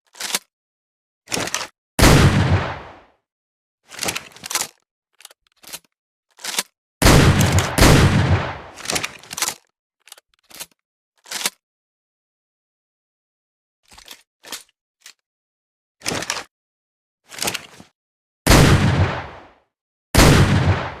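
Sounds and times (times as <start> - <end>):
loud shotgun shots: 2.0 - 3.0, 7.0 - 8.8, 18.5 - 19.5, 20.2 - 21.0
gun handling clicks: 4.0 - 11.6.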